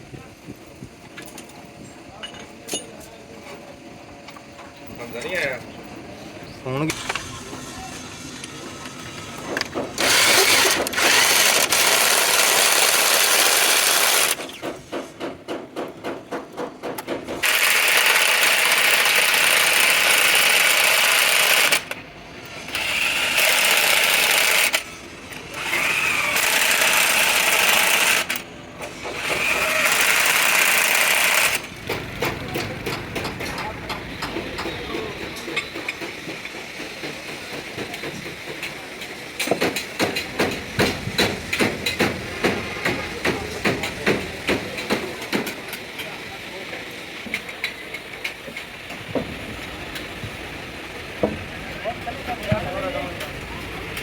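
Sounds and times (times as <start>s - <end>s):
power tool working metal: 9.9s - 14.6s, 17.4s - 31.8s.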